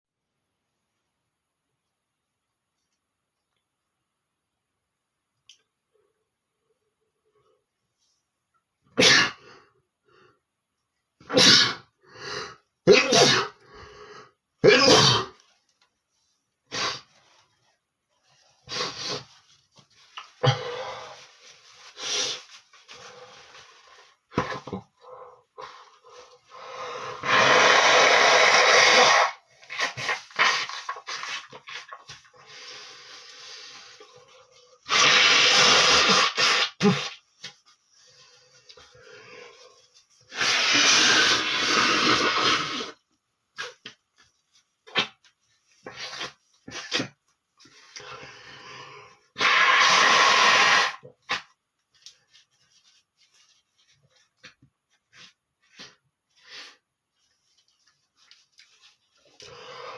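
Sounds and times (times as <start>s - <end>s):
man blowing his nose: 9.0s - 9.5s, 11.2s - 13.8s, 16.7s - 17.4s, 18.6s - 19.4s, 20.4s - 23.6s, 25.6s - 31.6s, 34.8s - 37.3s, 40.3s - 43.0s, 49.3s - 51.5s
rustling and snuffling: 15.2s - 26.6s, 50.7s - 59.9s
sharp snort: 27.2s - 30.8s, 49.4s - 51.5s.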